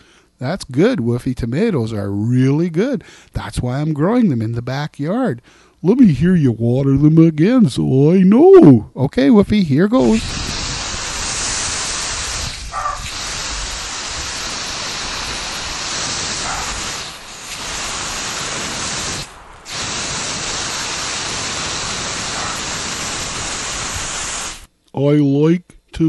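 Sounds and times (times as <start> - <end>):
water spraying from hose nozzle: 10.0 - 24.7.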